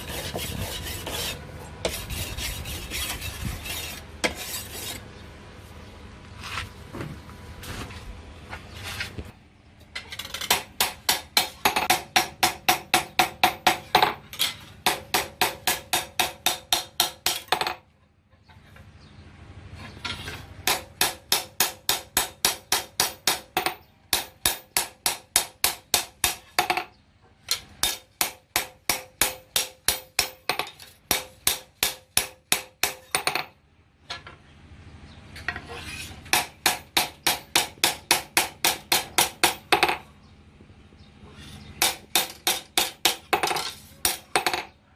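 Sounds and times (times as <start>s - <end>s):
hammer striking steel on anvil: 10.4s - 14.2s, 14.8s - 17.8s, 20.6s - 26.9s, 27.5s - 33.5s, 36.3s - 40.0s, 41.8s - 44.7s.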